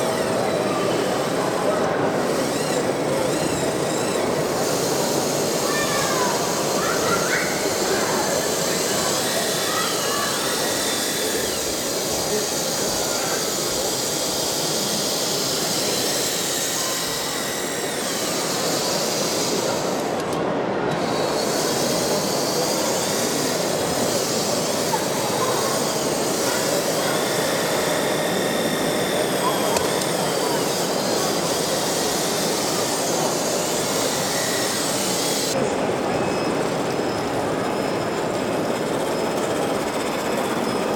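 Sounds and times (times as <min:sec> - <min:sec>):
machine whir and rumble: 0:00.0 - 0:40.9
motor and pump hissing: 0:00.0 - 0:40.9.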